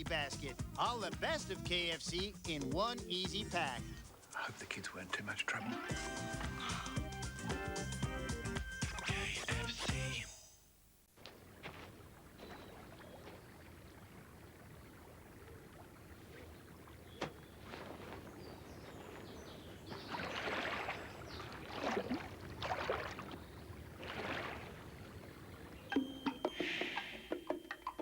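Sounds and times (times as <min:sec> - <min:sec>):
water splashing: 0:11.2 - 0:26.0
water rushing: 0:19.9 - 0:25.8.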